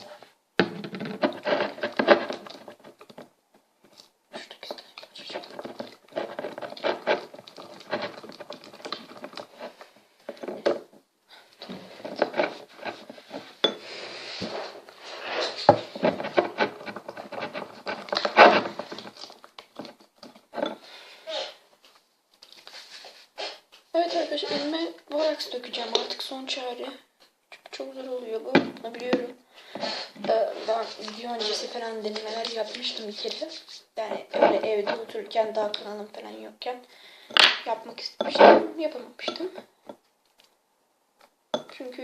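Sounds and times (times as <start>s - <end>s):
slime being stirred and squished: 3.9s - 9.8s.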